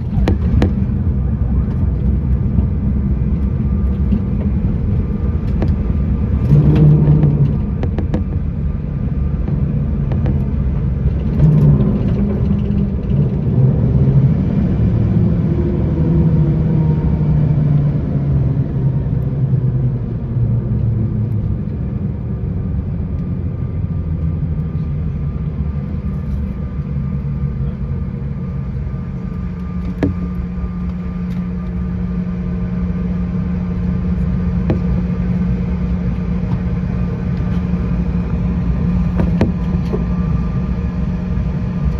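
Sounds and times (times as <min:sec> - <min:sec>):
airliner cabin engine drone: 0:00.0 - 0:41.9
sharp clunks: 0:39.0 - 0:40.1.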